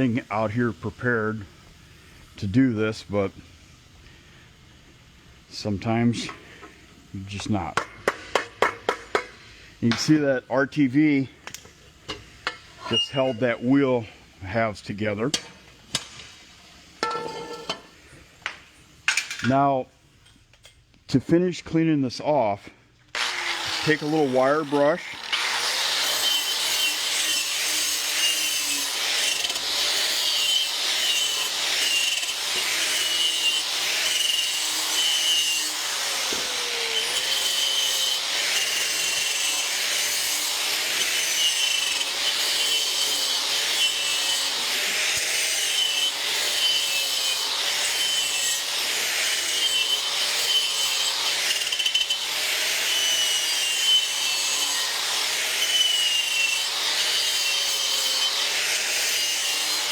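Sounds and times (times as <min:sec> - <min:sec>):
wire brush scrubbing metal: 0:23.2 - 0:59.9.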